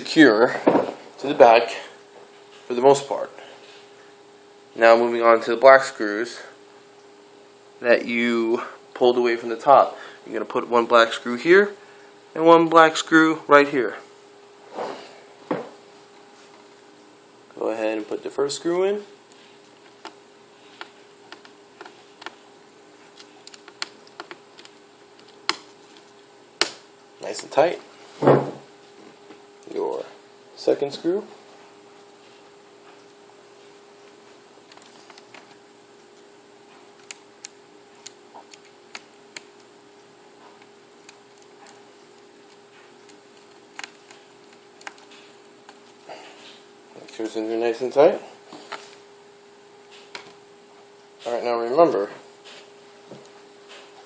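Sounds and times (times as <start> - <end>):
faint steady hum: 0.0 - 54.0.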